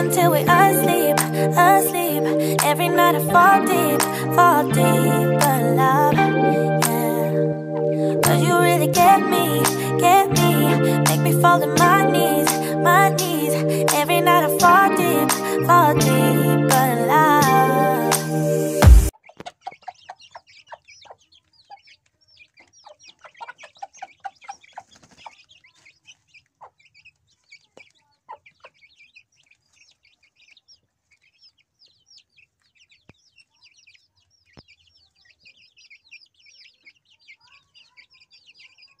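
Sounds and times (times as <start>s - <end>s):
song music: 0.0s - 19.1s
chickens clucking: 19.1s - 39.0s.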